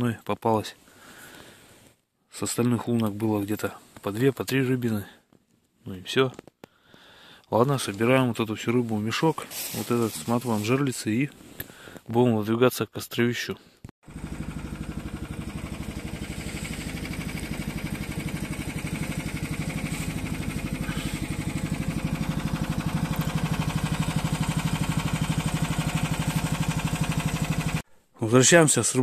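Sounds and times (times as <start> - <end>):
vehicle engine running: 14.0 - 27.8.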